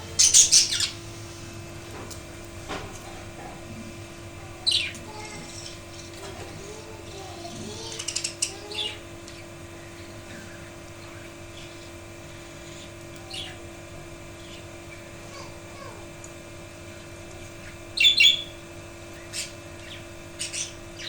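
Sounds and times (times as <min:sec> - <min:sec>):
budgies chirping: 0:00.0 - 0:01.4, 0:04.4 - 0:15.6, 0:16.9 - 0:21.0
steady hum: 0:00.0 - 0:21.0.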